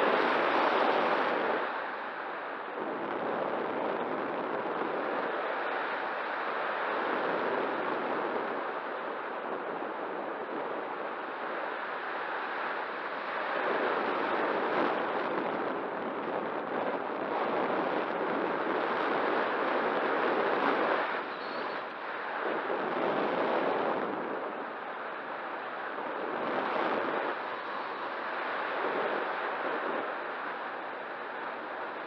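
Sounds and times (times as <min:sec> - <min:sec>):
wind rushing over microphone: 0:00.0 - 0:32.0.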